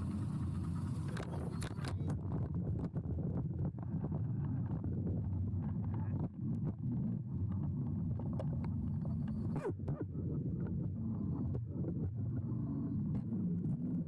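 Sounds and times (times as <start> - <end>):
electric mini-bike road noise: 0.0 - 2.2
wind rumble on microphone: 0.0 - 14.0.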